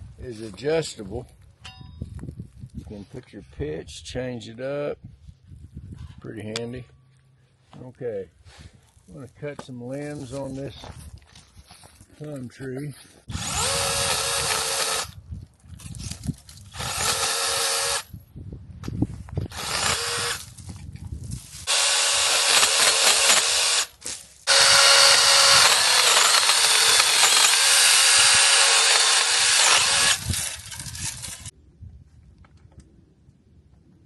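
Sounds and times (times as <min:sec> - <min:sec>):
electric pole saw cutting limbs: 0:13.3 - 0:15.2, 0:16.7 - 0:18.1, 0:19.5 - 0:20.5, 0:21.6 - 0:31.5.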